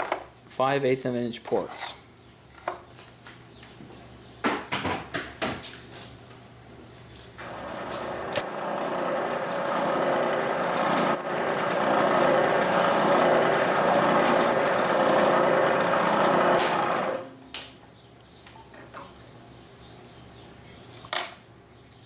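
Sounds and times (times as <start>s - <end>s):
electric drill boring into steel: 7.4s - 17.3s.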